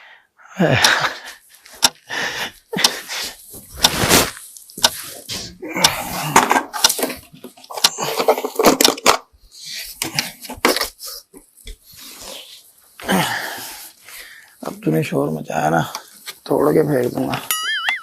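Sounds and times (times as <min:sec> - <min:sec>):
clatter of sharp knocks and clicks: 0:06.3 - 0:09.3.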